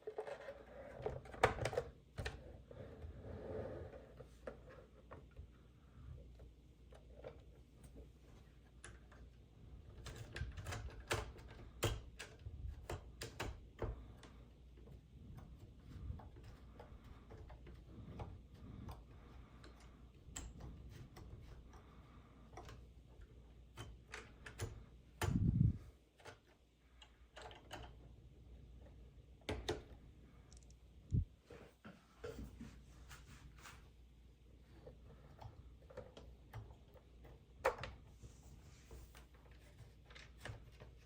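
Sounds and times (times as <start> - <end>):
plastic toys clicking and knocking: 0.0 - 2.4, 8.7 - 25.5, 26.1 - 30.7.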